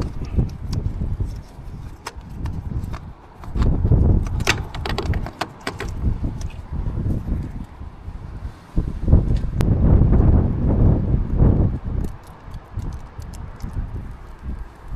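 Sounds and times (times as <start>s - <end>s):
gusty low rumble: 0.0s - 14.9s
tools clicking and knocking: 1.9s - 6.0s.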